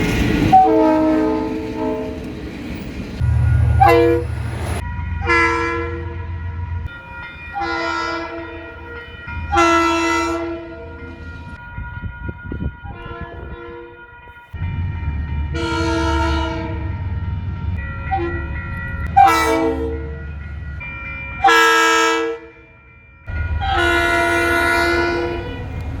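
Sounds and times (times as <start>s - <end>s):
train horn blasts: 0.5s - 2.3s, 3.2s - 6.4s, 7.6s - 11.0s, 12.8s - 18.5s, 19.1s - 20.2s, 21.4s - 22.6s, 23.4s - 25.9s.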